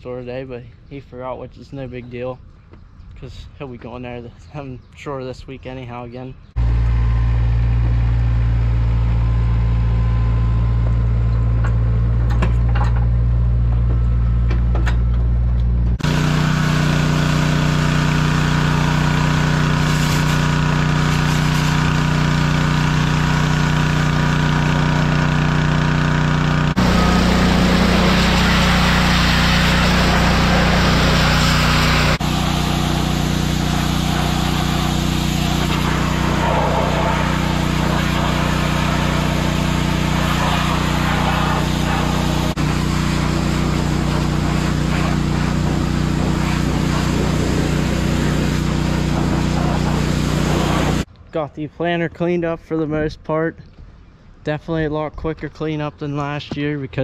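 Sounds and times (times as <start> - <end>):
skid loader engine running: 6.6 - 51.1.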